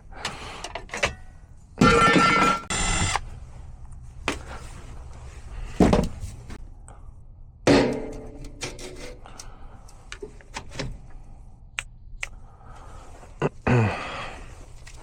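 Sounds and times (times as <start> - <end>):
sheet metal banging: 7.7 - 9.0.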